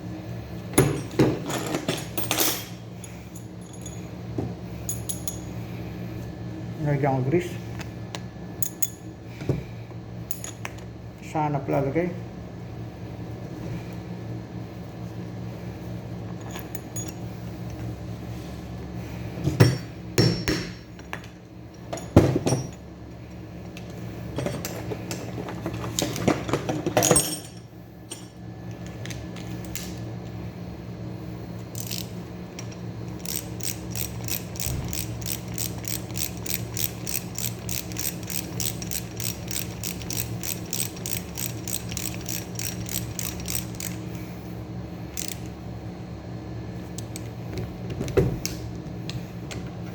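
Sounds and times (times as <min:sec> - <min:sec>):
metal parts clanking: 0:24.4 - 0:28.4
ratchet clicking: 0:31.7 - 0:44.0, 0:45.1 - 0:45.5.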